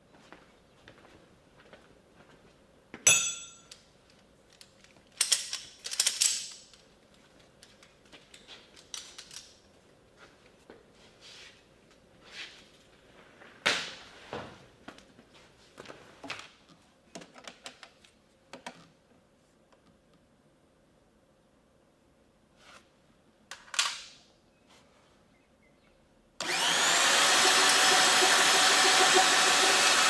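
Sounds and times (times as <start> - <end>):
sharp metallic clink: 3.1 - 3.8.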